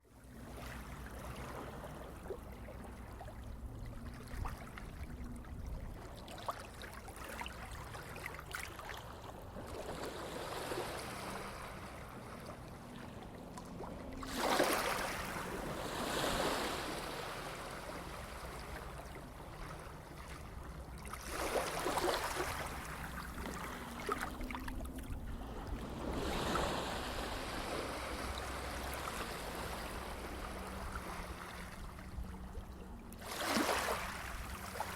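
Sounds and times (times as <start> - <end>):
sea waves washing in: 0.2 - 34.9.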